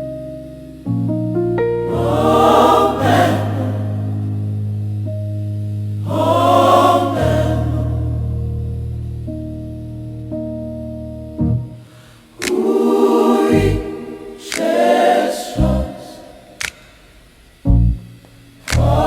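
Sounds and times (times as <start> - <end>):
held low accompaniment notes: 0.0 - 11.8, 17.6 - 19.0
choir singing slow chords: 1.6 - 9.4, 11.8 - 16.6, 17.8 - 19.0.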